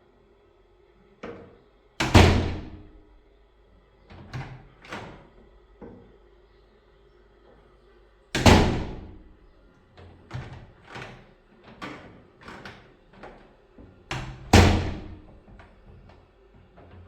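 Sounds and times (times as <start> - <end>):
door slamming shut: 2.0 - 3.0, 8.4 - 9.4, 14.1 - 15.4.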